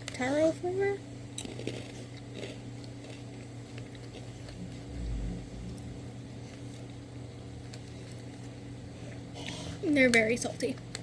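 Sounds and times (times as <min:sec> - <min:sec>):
low mechanical hum: 0:00.0 - 0:11.0
brief low rumble: 0:04.6 - 0:06.5.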